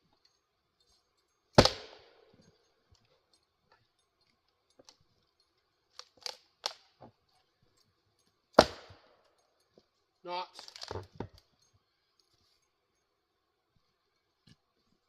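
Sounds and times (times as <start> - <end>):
axe splitting firewood: 1.5 - 2.4, 5.9 - 7.2, 8.5 - 9.1, 10.6 - 11.4.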